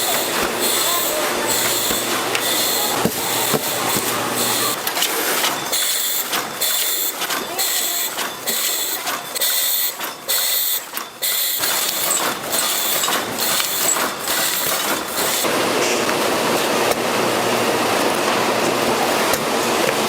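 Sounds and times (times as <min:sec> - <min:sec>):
machine rattling: 0:00.0 - 0:15.5.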